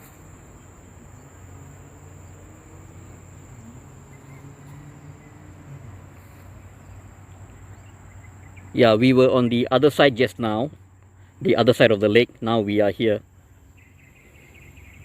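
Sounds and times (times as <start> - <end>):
insects droning: 0.0 - 15.0.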